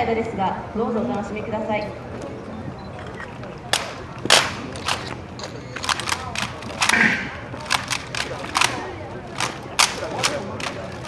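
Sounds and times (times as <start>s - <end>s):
crowd murmur: 0.0s - 11.0s
boots stamping: 3.7s - 11.0s
hands slapping rifles: 3.7s - 11.0s.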